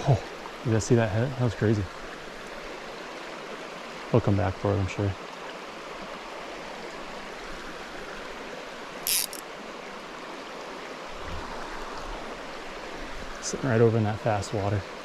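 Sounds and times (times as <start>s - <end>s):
brief high hiss: 9.1s - 9.4s.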